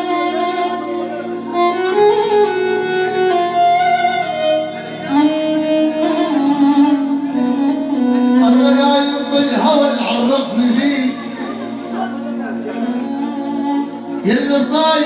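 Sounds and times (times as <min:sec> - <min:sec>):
instrumental accompaniment: 0:00.0 - 0:15.0
violin-like lead melody: 0:00.0 - 0:15.0.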